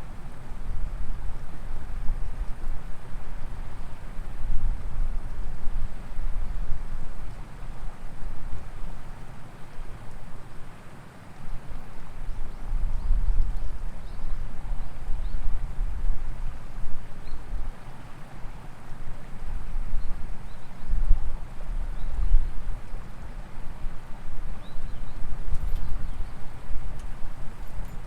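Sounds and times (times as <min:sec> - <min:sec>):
wind gusting against microphone: 0:00.0 - 0:09.0, 0:18.6 - 0:28.0.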